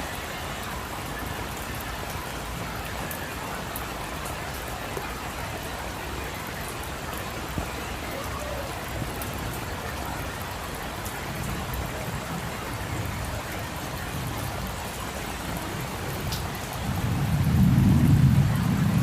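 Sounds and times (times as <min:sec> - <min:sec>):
rain falling on a street: 0:00.0 - 0:19.0.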